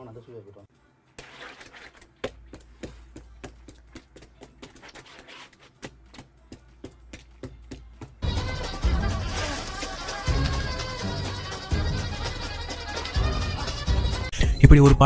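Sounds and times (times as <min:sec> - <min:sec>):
foley footsteps and scuffs: 0:01.2 - 0:08.2.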